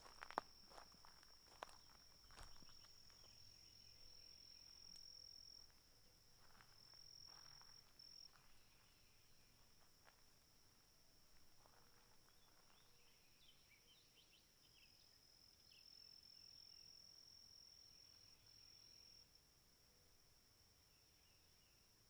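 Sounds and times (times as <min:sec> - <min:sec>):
soft footsteps on ground: 0:00.0 - 0:13.2.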